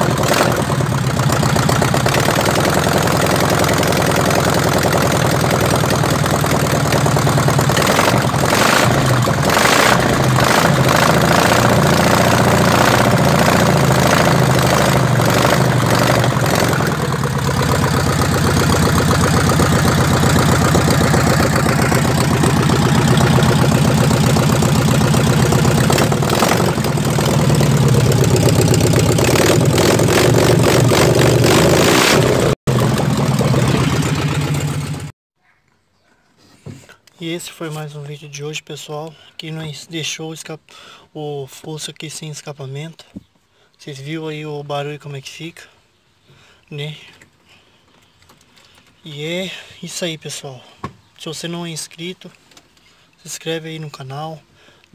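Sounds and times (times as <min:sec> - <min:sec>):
unmuffled car engine revving: 0:07.8 - 0:17.0, 0:18.4 - 0:34.1.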